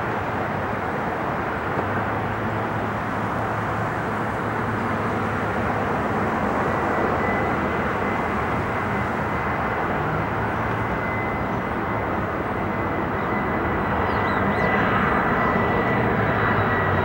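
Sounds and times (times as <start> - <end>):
jet engines droning: 0.0 - 17.0
faint high whine: 4.5 - 17.0.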